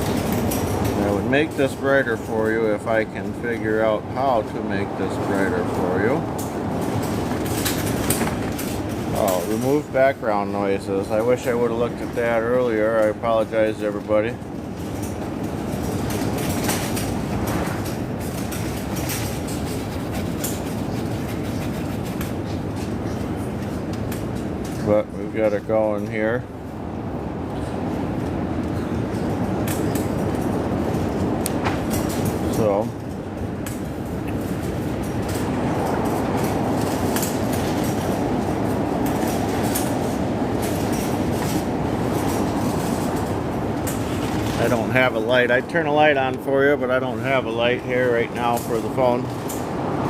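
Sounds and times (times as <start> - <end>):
strong wind roaring: 0.0 - 50.0
things rattling in gusts: 0.0 - 50.0.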